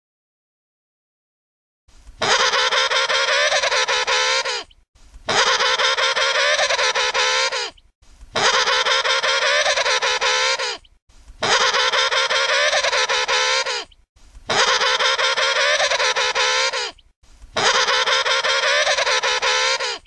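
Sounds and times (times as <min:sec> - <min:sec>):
penguin trumpeting call: 0:02.2 - 0:04.7, 0:05.3 - 0:07.8, 0:08.4 - 0:10.8, 0:11.4 - 0:13.9, 0:14.5 - 0:17.0, 0:17.6 - 0:20.0.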